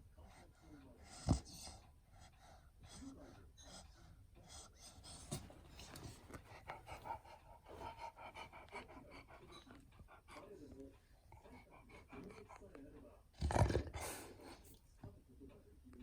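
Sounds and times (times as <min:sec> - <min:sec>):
dog panting: 0:00.0 - 0:15.0.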